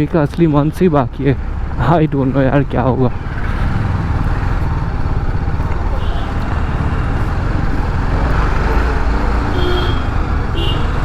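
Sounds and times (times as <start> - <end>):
motorcycle engine running: 3.1 - 11.0.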